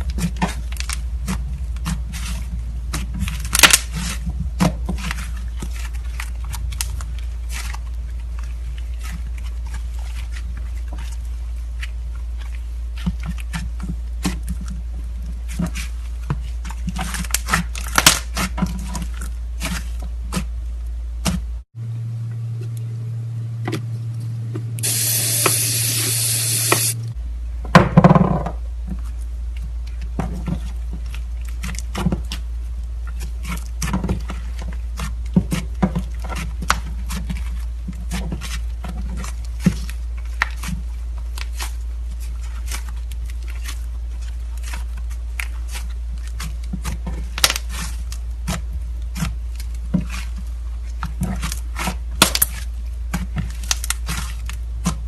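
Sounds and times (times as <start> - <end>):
slime kneaded by hand: 0.0 - 21.6, 28.8 - 55.0
steady low hum: 0.0 - 27.7
hiss: 24.8 - 27.0.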